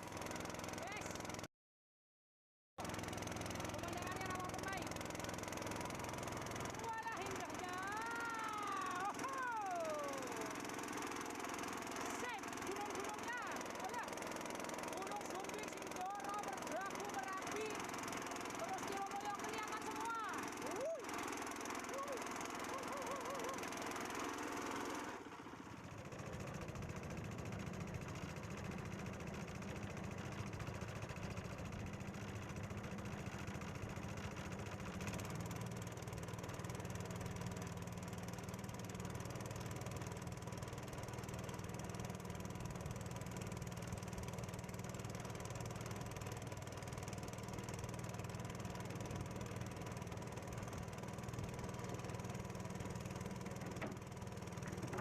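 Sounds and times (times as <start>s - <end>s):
small boat engine running: 0.0s - 1.5s, 2.8s - 55.0s.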